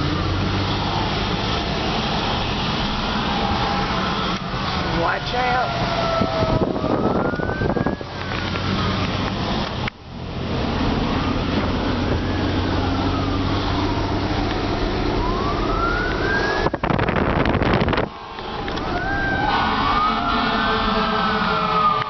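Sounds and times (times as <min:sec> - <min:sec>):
emergency siren wailing: 0:00.0 - 0:09.7, 0:10.4 - 0:22.0
loud rush of noise: 0:00.0 - 0:22.0.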